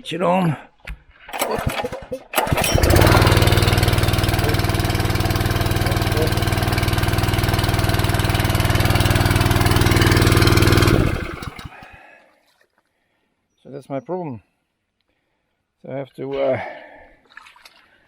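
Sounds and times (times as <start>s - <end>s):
water pump engine running: 1.3s - 12.0s.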